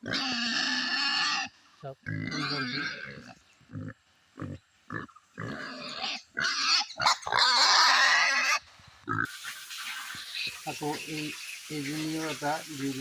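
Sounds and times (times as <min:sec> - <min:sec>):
pigs grunting: 0:00.0 - 0:11.0
pigs squealing loudly: 0:00.0 - 0:11.4.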